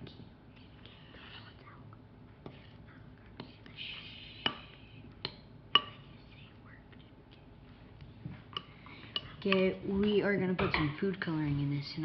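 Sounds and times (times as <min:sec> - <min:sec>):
utensil tapping against bowl: 0:04.4 - 0:06.0, 0:08.4 - 0:11.3.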